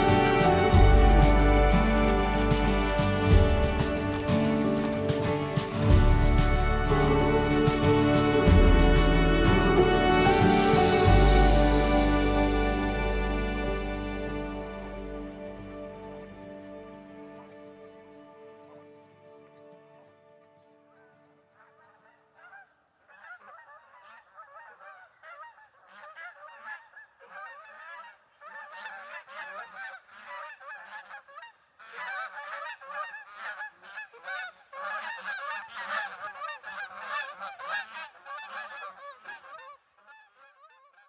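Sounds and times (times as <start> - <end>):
geese honking: 0.0 - 18.2, 23.2 - 41.0
background music: 0.0 - 20.8.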